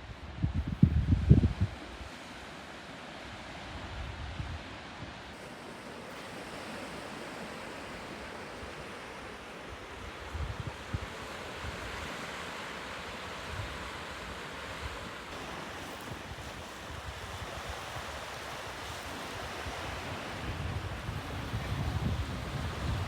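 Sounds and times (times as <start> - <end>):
wind buffeting microphone: 0.0 - 2.0, 9.9 - 12.0, 15.4 - 23.0
waves breaking on shore: 1.2 - 23.0.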